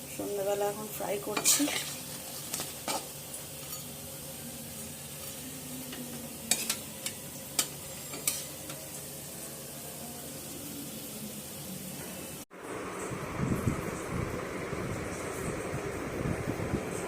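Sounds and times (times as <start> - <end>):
food sizzling in oil: 0.0 - 13.1.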